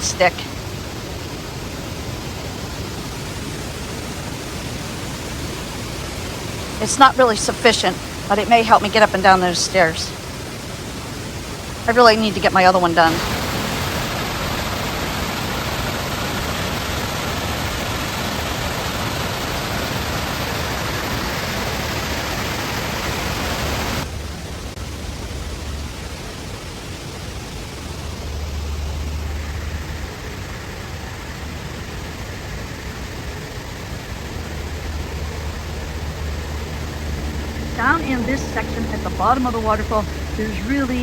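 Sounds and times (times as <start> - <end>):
waterfall rushing: 0.0 - 41.0
low rumbling: 27.6 - 41.0.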